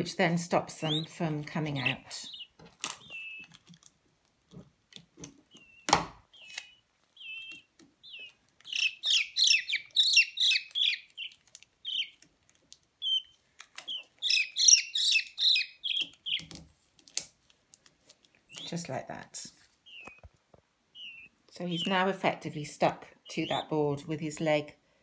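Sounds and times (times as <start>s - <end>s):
peachick peeping: 0.4s - 3.7s, 5.4s - 12.3s, 13.0s - 16.6s, 18.5s - 19.0s, 19.8s - 24.0s.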